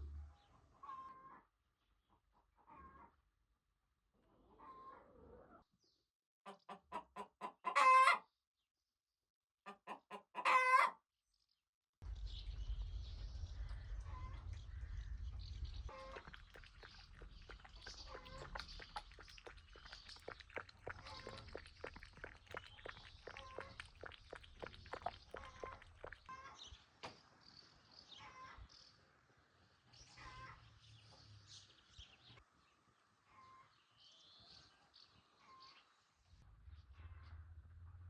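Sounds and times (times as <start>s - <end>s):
low rumble: 0.0s - 0.4s, 12.0s - 26.4s, 36.4s - 38.0s
hens cackling and squawking: 6.5s - 8.2s, 9.7s - 11.0s, 15.9s - 26.6s.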